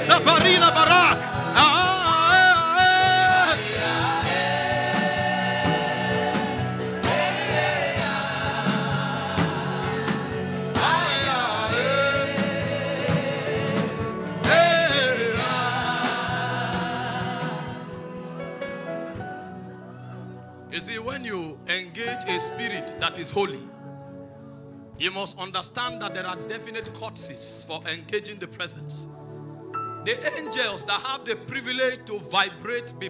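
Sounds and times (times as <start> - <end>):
gospel worship singing: 0.0 - 19.2
instrumental accompaniment: 0.0 - 27.0.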